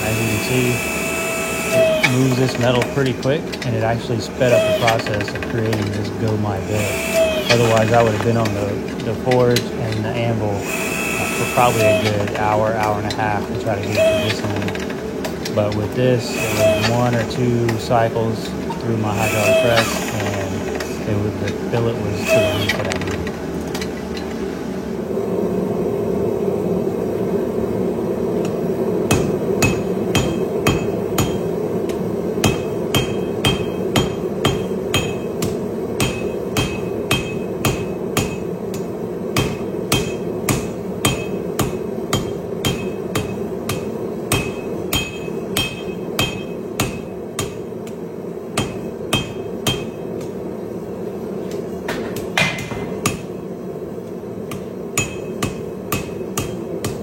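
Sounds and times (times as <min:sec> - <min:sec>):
hammer striking steel on anvil: 0:29.1 - 0:31.5, 0:32.4 - 0:38.8, 0:39.4 - 0:47.7, 0:48.5 - 0:50.3, 0:51.9 - 0:53.4, 0:54.5 - 0:57.0.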